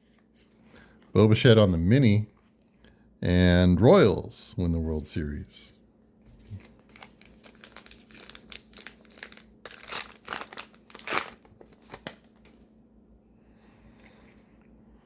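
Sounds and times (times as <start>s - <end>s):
cards rustling: 6.4s - 12.6s
card pack wrapper tearing: 6.6s - 12.5s.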